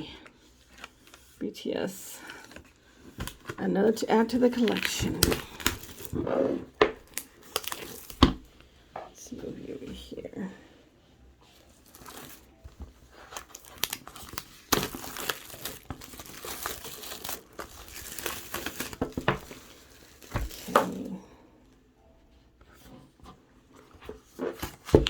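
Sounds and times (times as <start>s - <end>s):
packaging crinkling and tearing: 4.2s - 8.4s, 11.8s - 21.2s.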